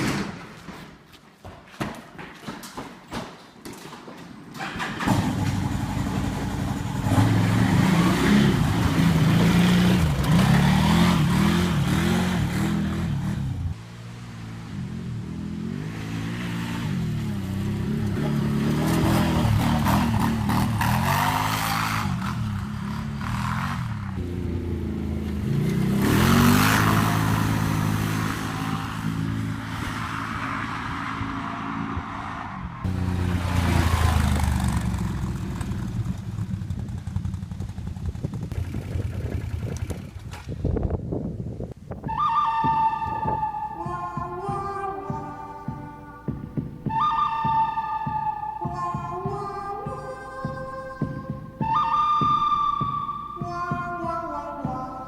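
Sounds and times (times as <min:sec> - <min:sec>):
engine revving: 0:04.6 - 0:40.3.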